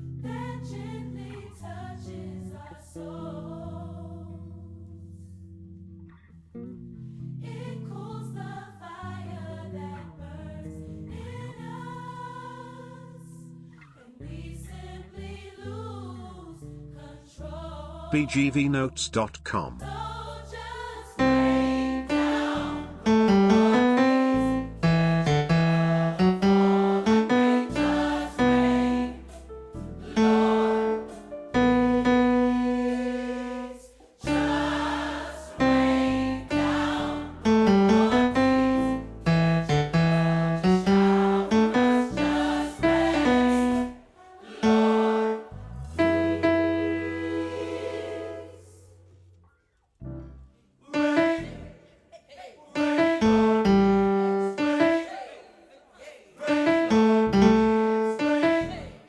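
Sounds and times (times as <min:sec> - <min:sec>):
gospel tenor singing: 0:17.9 - 0:29.4, 0:30.0 - 0:48.8, 0:50.9 - 0:59.0
sustained low keyboard notes: 0:21.2 - 0:33.7, 0:35.6 - 0:44.0, 0:44.6 - 0:47.4, 0:52.8 - 0:54.8, 0:56.8 - 0:59.0.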